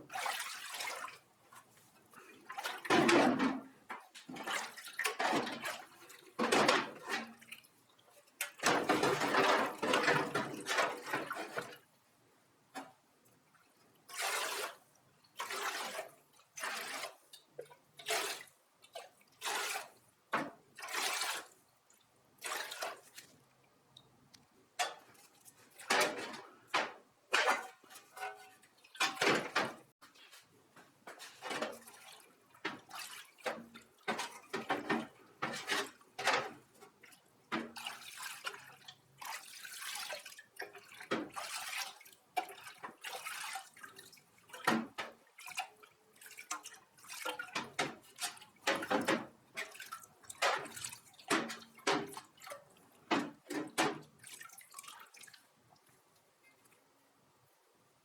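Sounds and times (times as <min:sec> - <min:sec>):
water splashing and dripping: 0:00.1 - 0:01.6, 0:13.5 - 0:56.8.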